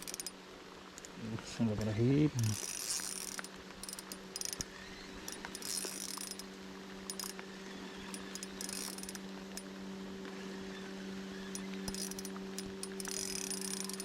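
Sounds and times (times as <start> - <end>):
fishing reel clicking: 0.0 - 0.3, 2.4 - 4.7, 5.3 - 6.4, 7.1 - 7.4, 8.1 - 9.2, 11.6 - 14.0
low hum: 1.0 - 14.0.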